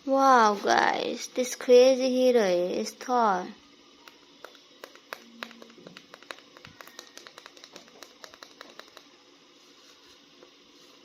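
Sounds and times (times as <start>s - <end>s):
small plastic clicks and taps: 4.0s - 9.1s.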